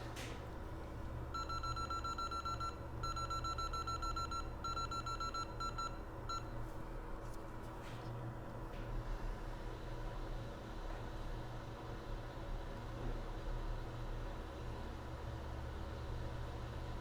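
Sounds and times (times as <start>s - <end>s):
steady low electronic hum: 0.0s - 8.6s.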